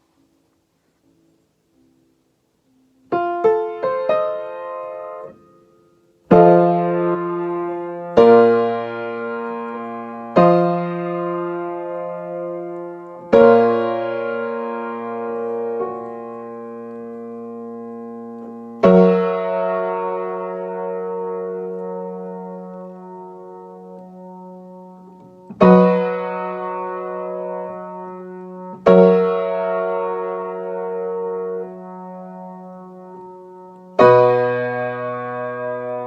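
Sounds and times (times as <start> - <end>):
piano notes and chords: 0.0 - 36.0.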